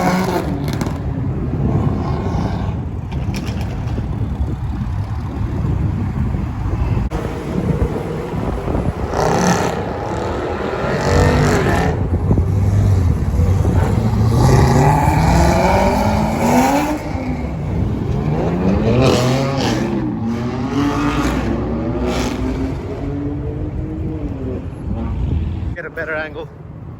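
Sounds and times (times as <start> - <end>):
road noise: 0.0 - 26.9
car engine accelerating hard: 5.3 - 24.9.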